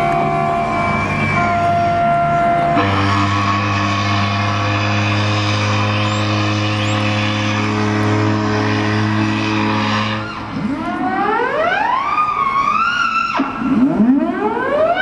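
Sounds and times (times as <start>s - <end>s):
ship's horn blast: 0.0s - 11.0s
rising siren-like wail: 0.0s - 15.0s.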